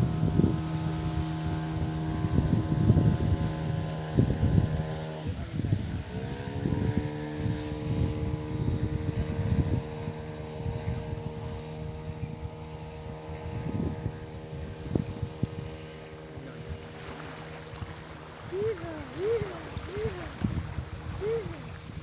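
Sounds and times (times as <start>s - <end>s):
small boat engine running: 0.0s - 22.0s
wind buffeting microphone: 0.0s - 22.0s.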